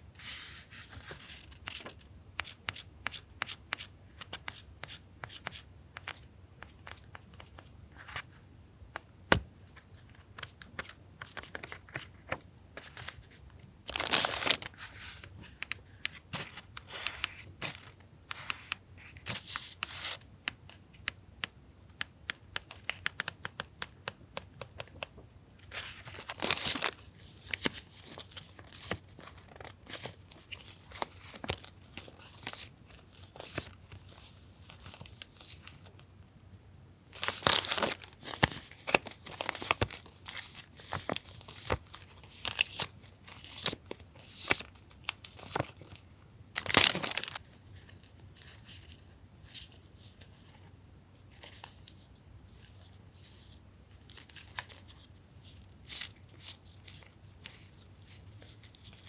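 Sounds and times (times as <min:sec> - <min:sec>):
sticker packs rustling: 0:13.9 - 0:20.2, 0:22.6 - 0:35.8, 0:37.2 - 0:44.7, 0:46.6 - 0:49.0.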